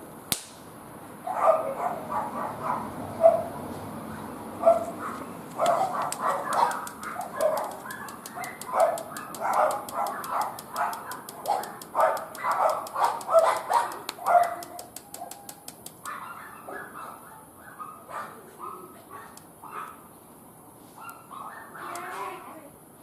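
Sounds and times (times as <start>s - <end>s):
dog barking: 1.2s - 20.0s, 21.0s - 22.2s
faint rapid clicking: 5.5s - 16.2s.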